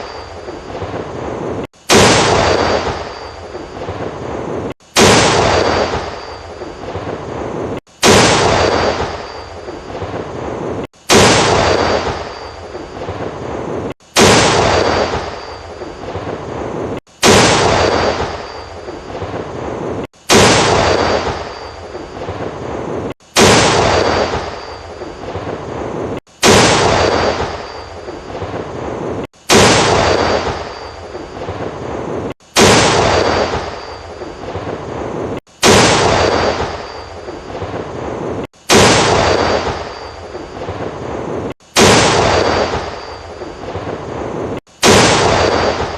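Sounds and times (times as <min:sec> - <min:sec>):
tank gun firing with echo: 0:01.8 - 0:03.4, 0:04.9 - 0:06.4, 0:08.0 - 0:09.5, 0:11.0 - 0:12.6, 0:14.1 - 0:15.6, 0:17.2 - 0:18.7, 0:20.2 - 0:21.8, 0:23.3 - 0:24.8, 0:26.4 - 0:27.9, 0:29.5 - 0:31.0, 0:32.5 - 0:34.0, 0:35.6 - 0:37.0, 0:38.7 - 0:40.1, 0:41.7 - 0:43.2, 0:44.8 - 0:45.9.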